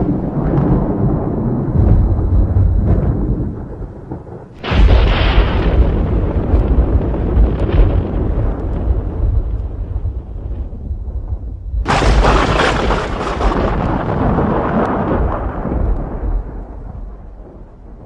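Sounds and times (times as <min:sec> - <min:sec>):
rolling thunder rumble: 0:00.0 - 0:18.0
sharp thunderclap: 0:00.0 - 0:18.0.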